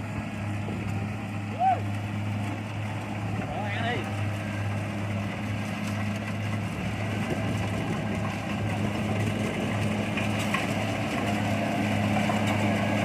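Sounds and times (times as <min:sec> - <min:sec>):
diesel engine humming: 0:00.0 - 0:13.0.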